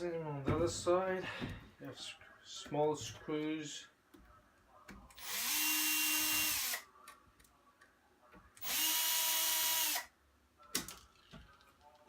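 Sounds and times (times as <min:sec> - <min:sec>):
electric drill whine: 0:08.6 - 0:10.0.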